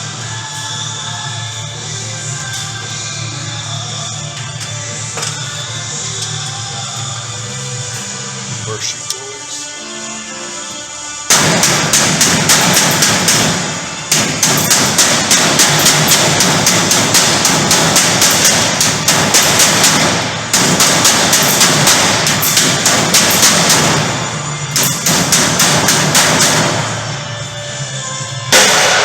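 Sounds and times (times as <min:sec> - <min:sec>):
rapid hammering: 0:11.3 - 0:27.3, 0:28.5 - 0:29.0.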